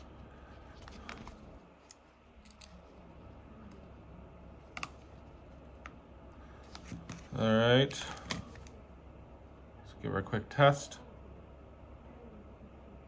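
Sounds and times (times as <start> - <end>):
low steady hum: 0.0 - 13.0
phone parts clicking together: 0.8 - 3.0, 4.7 - 5.2.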